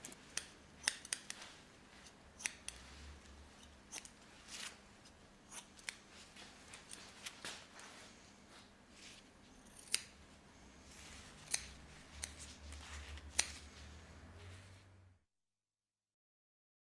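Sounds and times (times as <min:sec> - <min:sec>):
scissors snipping: 0:00.0 - 0:01.4, 0:02.0 - 0:02.9, 0:03.6 - 0:06.1, 0:09.6 - 0:10.2, 0:11.4 - 0:13.7.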